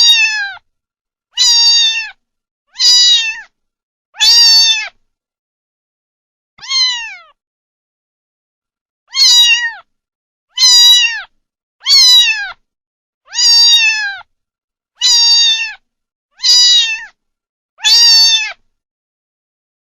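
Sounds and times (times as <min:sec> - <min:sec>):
kitten meowing: 0:00.0 - 0:00.6, 0:01.4 - 0:03.5, 0:04.2 - 0:05.0, 0:06.6 - 0:07.4, 0:09.1 - 0:09.9, 0:10.5 - 0:12.6, 0:13.3 - 0:14.3, 0:15.0 - 0:15.8, 0:16.4 - 0:17.2, 0:17.8 - 0:18.6.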